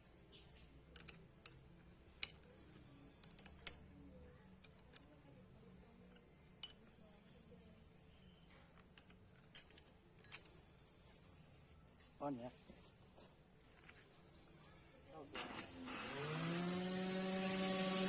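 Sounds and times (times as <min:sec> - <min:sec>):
small metal parts clicking: 0:00.3 - 0:03.9, 0:04.5 - 0:05.2, 0:06.1 - 0:07.0, 0:08.7 - 0:10.6.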